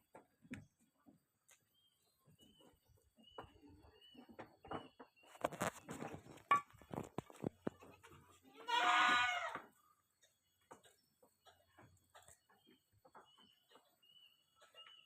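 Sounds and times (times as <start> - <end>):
knocks and rustling in pen: 2.3 - 9.8
goat bleating: 7.8 - 9.7.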